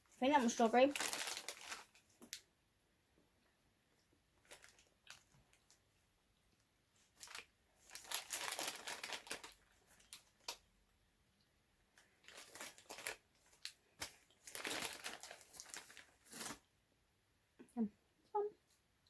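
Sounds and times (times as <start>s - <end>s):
plastic packet crinkling: 0.2s - 2.4s, 4.4s - 5.8s, 7.2s - 10.6s, 12.0s - 16.6s.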